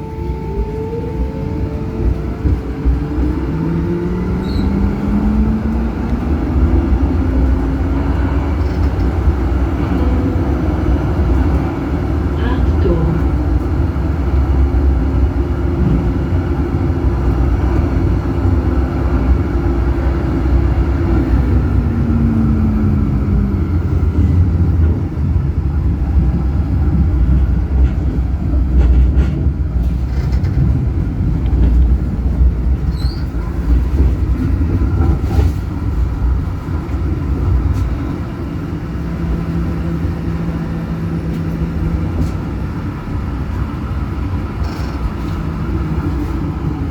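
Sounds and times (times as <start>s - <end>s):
low hum: 0.0s - 26.2s
tram motor whine: 0.0s - 46.9s
tram wheels rumbling on track: 0.0s - 46.9s.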